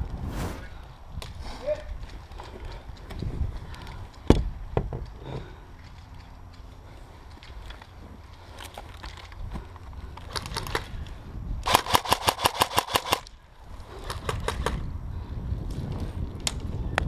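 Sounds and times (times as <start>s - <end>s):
airsoft gun firing bursts: 11.7s - 13.2s.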